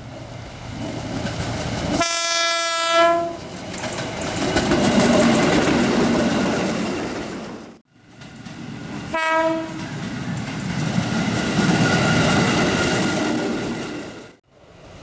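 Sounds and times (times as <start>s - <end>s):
train running and wheel clatter: 0.0s - 15.0s
electric train horn blast: 2.0s - 3.4s, 9.1s - 9.8s.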